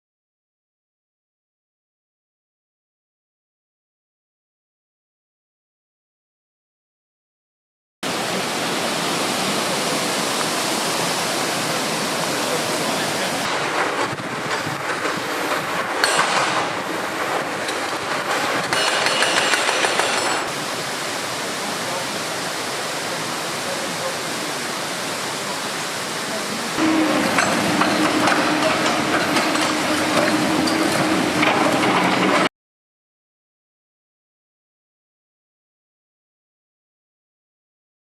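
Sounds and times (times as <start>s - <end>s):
waterfall rushing water: 8.0s - 32.5s.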